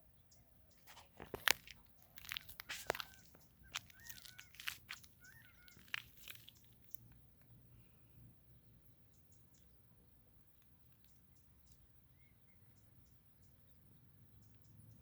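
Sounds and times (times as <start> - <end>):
sharp crunching clicks: 0.8 - 7.5
quail calls: 2.2 - 6.6.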